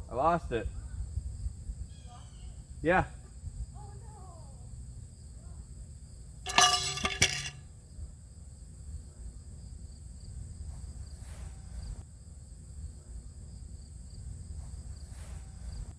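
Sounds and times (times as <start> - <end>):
crickets chirping: 0.0 - 6.3, 8.0 - 15.1
metallic clangs ringing: 6.5 - 7.6.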